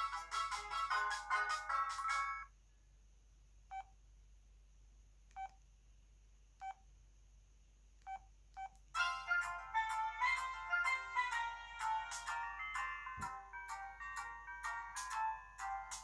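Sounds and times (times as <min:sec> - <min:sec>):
polyphonic ringtone melody: 0:00.0 - 0:02.5, 0:09.0 - 0:16.0.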